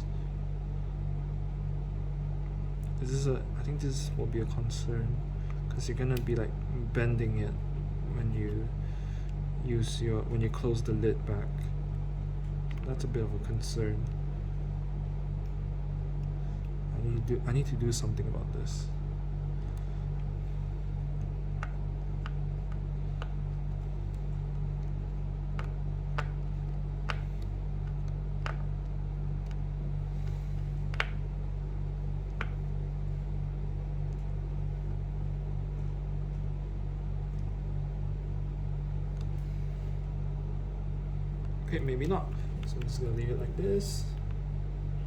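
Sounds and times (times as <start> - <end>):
steady low hum: 0.0 - 45.0
small sharp clicks and taps: 19.6 - 31.3, 32.2 - 32.7.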